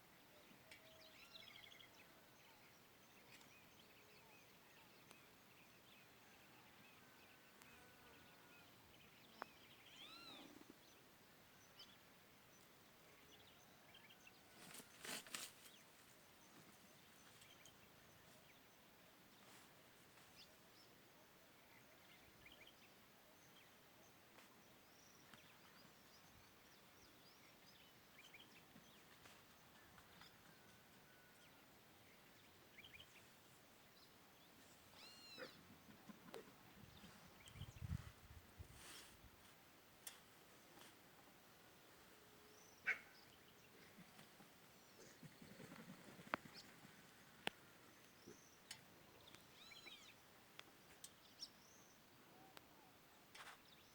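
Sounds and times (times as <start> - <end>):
birds chirping: 24.6 - 38.4, 40.4 - 53.0.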